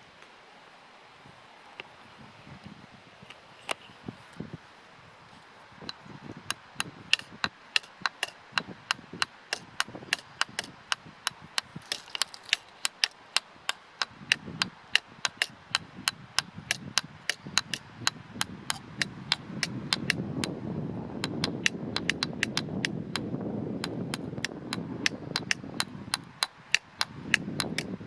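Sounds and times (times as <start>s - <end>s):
sticks knocking on wood: 6.8s - 8.4s.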